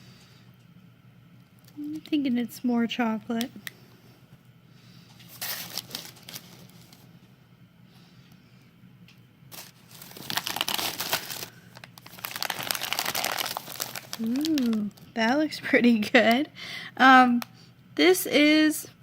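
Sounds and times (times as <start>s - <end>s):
plastic packaging crinkling: 5.2s - 7.1s, 9.5s - 15.2s.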